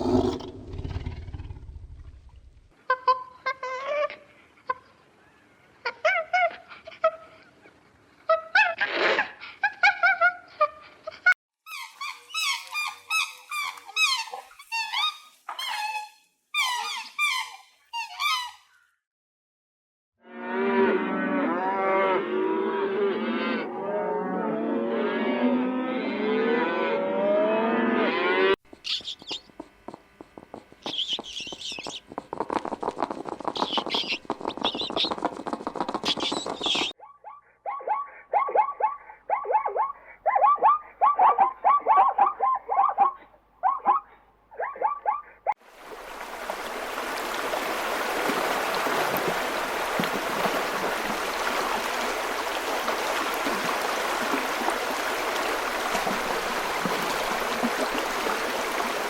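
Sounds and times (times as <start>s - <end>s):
rapid clicking and pattering: 28.7s - 37.0s
small birds chirping: 28.7s - 37.0s.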